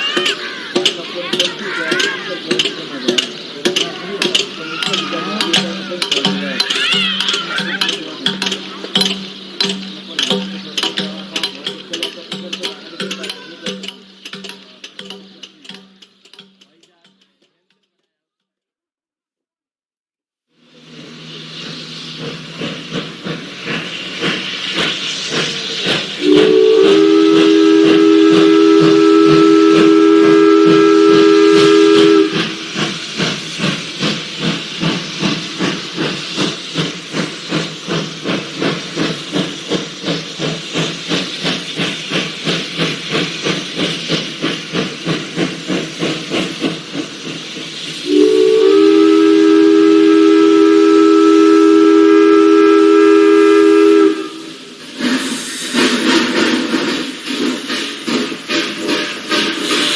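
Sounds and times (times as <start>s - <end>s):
steam locomotive exhaust chuffing: 0.0s - 17.9s, 20.6s - 59.9s
multi-tone steam whistle: 26.2s - 32.7s, 48.0s - 56.0s.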